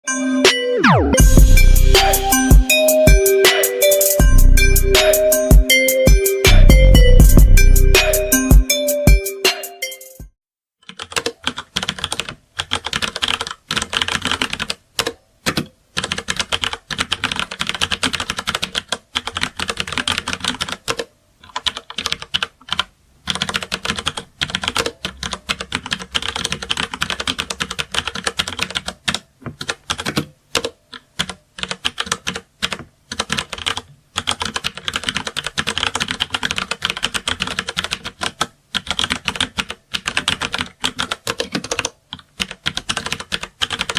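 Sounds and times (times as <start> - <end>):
fast typing on keyboard: 10.8 - 43.9.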